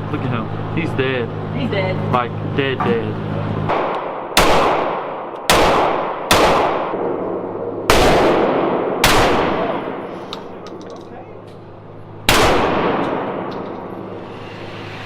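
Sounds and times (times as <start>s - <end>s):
gunshots echoing: 3.7s - 10.7s, 12.3s - 14.2s.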